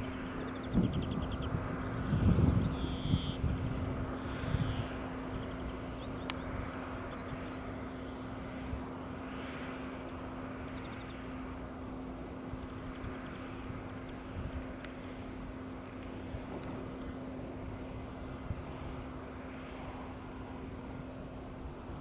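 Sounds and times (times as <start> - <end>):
wind buffeting microphone: 0.0 - 7.6
distant jet engines running: 0.0 - 22.0.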